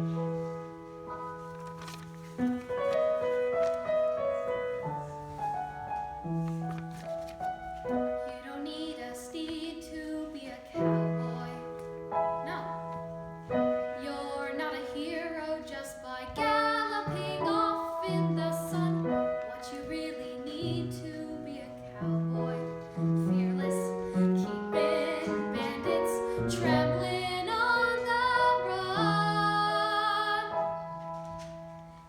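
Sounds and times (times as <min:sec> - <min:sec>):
piano accompaniment: 0:00.0 - 0:32.0
child singing: 0:14.0 - 0:30.6.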